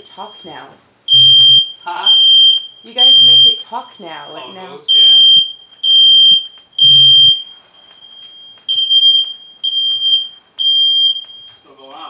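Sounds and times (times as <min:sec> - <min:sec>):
smoke alarm beeping: 0:00.0 - 0:11.9.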